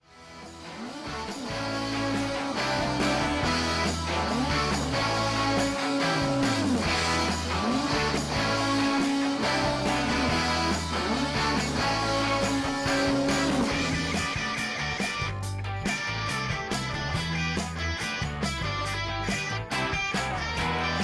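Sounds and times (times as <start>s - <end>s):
steady bass line: 0.0s - 21.0s
guitar with sliding notes: 0.1s - 21.0s.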